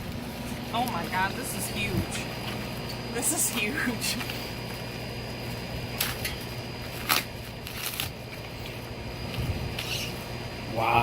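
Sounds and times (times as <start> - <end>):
steady low hum: 0.0 - 11.0
packaging rustling and crackling: 5.9 - 10.2.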